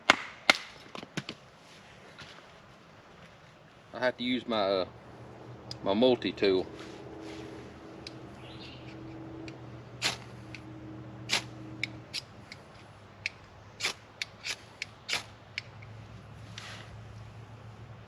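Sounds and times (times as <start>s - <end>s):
multi-tool clicks and snips: 8.0s - 10.7s, 11.3s - 16.0s.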